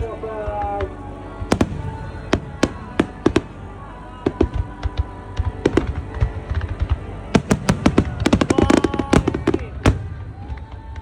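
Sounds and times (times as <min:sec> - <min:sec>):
music playing: 0:00.0 - 0:11.0
fireworks bangs: 0:04.2 - 0:11.0.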